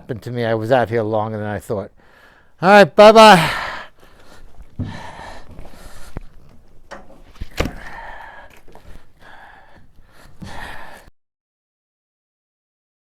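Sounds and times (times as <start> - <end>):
person breathing: 2.0 - 2.6, 3.4 - 6.7, 7.3 - 11.1
handling clicks and knocks: 4.2 - 10.6.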